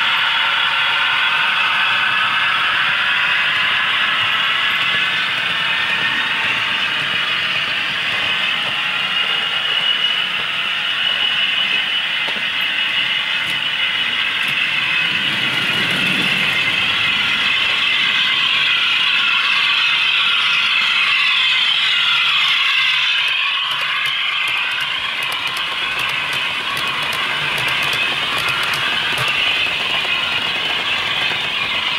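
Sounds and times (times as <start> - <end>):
thin locomotive sound from speaker: 0.0 - 31.9
model train motor whirring: 20.4 - 31.9.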